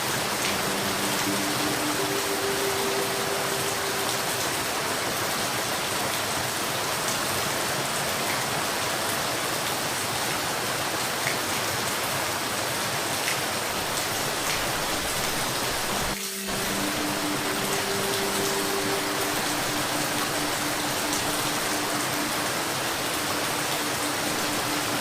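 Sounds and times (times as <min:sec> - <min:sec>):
steady rain hiss: 0:00.0 - 0:25.0
faint steady hum: 0:13.8 - 0:25.0.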